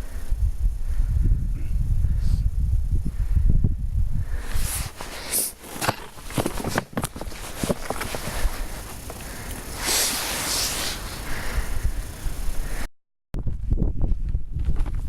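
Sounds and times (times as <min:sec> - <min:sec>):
man breathing heavily: 0:00.0 - 0:05.7, 0:07.4 - 0:12.9
footsteps crunching on dirt: 0:04.6 - 0:11.6.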